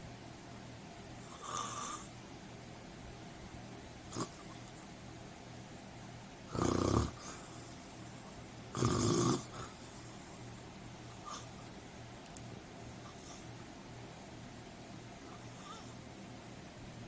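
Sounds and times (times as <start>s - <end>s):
faint steady hum: 0.0s - 17.0s
loud snores: 1.3s - 2.1s, 4.1s - 4.4s, 6.5s - 7.5s, 8.7s - 9.7s.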